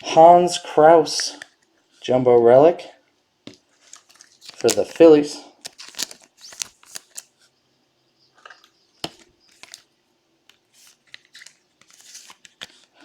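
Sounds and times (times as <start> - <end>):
cards sliding and brushing: 10.7 - 12.9.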